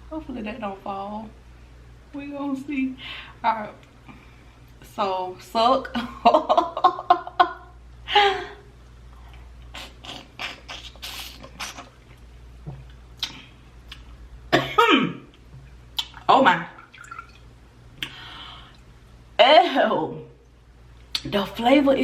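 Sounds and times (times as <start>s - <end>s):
wet slurping and sucking: 9.7s - 12.2s.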